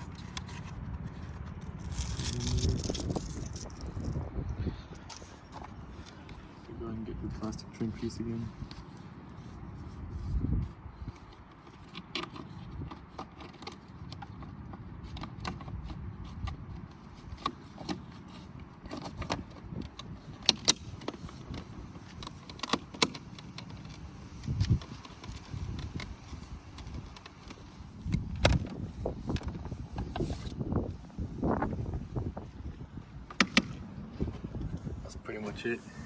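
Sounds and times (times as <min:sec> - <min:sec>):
low rumbling handling noise: 0:00.0 - 0:36.0.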